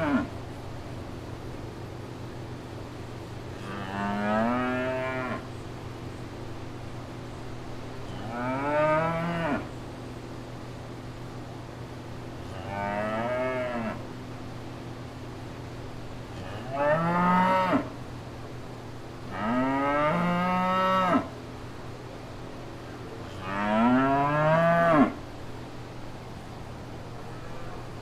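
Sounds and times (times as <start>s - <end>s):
cattle mooing: 0.0s - 0.3s, 12.5s - 14.0s, 23.4s - 25.2s.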